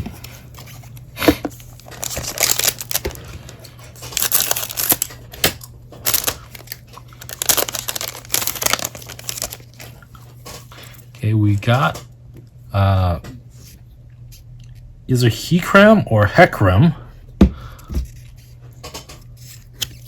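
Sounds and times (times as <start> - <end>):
foil wrapper crinkling: 0.3 - 11.0.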